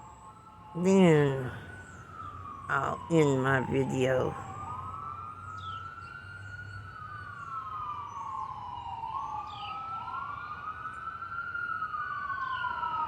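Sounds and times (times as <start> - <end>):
ambulance siren wailing: 0.0 - 13.0.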